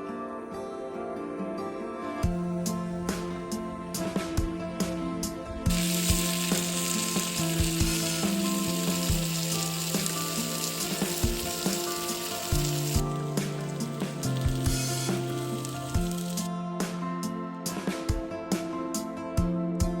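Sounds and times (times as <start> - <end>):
food sizzling in a pan: 5.7 - 16.5.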